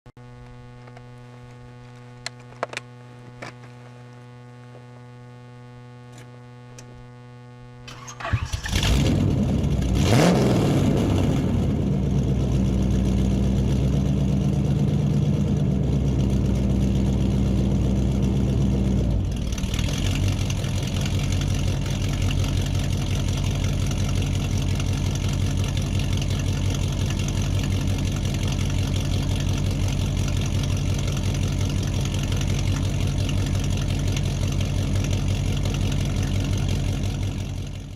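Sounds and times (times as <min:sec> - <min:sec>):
steady low hum: 0:00.2 - 0:37.9
trike engine revving and idling: 0:07.9 - 0:37.9.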